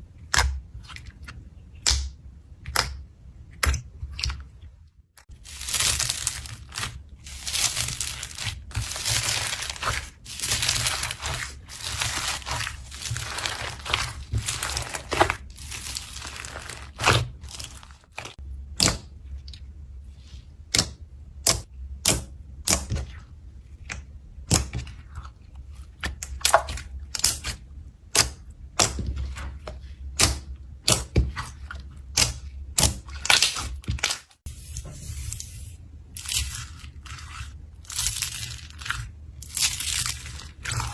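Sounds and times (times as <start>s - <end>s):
slime squelching: 0.0s - 40.9s
slime popping and crackling: 5.3s - 19.0s, 36.2s - 40.9s.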